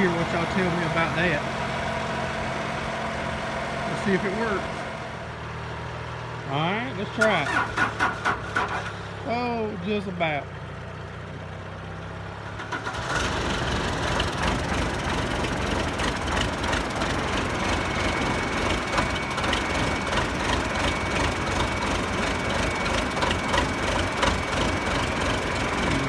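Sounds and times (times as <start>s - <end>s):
diesel engine running with clatter: 0.0s - 26.0s.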